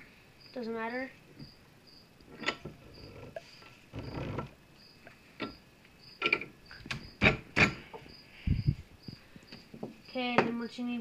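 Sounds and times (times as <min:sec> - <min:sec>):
cricket chirping: 0:00.0 - 0:10.4.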